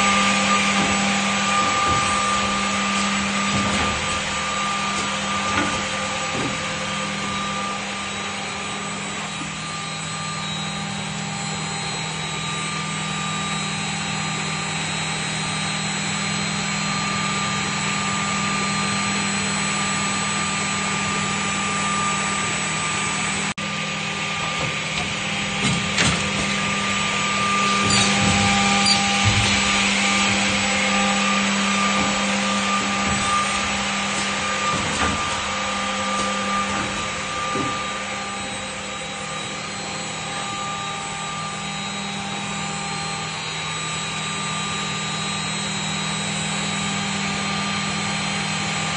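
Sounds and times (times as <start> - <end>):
machine motor hum: 0.0 - 46.0
sharp machining sounds: 27.3 - 30.8.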